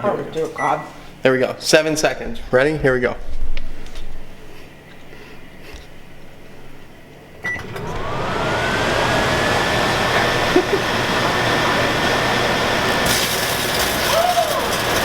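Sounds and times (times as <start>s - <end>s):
microwave humming and whining: 6.8s - 15.0s
microwave short beep: 7.4s - 7.8s.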